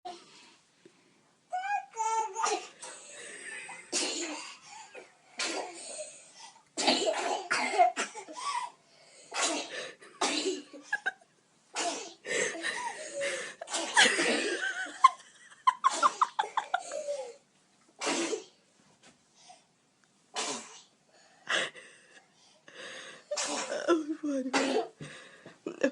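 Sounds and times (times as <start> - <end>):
coughing: 2.3 - 6.2, 6.8 - 11.2, 11.8 - 15.1, 15.7 - 17.4, 23.3 - 25.0
girls laughing: 10.7 - 11.2, 12.4 - 17.2
girls sneezing: 23.3 - 23.9.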